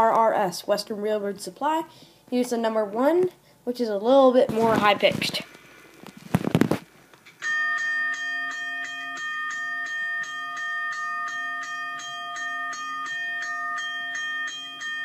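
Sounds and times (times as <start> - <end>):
railroad crossing bell ringing: 7.4 - 15.0.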